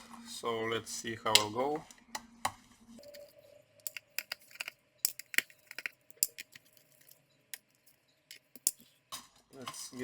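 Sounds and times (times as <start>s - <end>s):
clicks of small hard objects: 3.9s - 10.0s.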